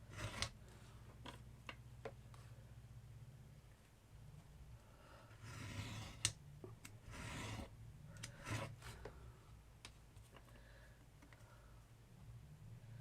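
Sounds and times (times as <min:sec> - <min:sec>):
knife scraping through chipboard: 0:00.0 - 0:00.5, 0:05.4 - 0:06.3, 0:07.1 - 0:07.7.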